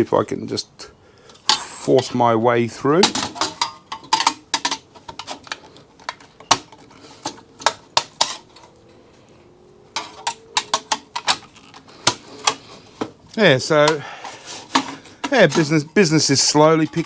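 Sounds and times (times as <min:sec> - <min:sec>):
metal parts clicking: 0:03.0 - 0:08.8, 0:09.9 - 0:13.0.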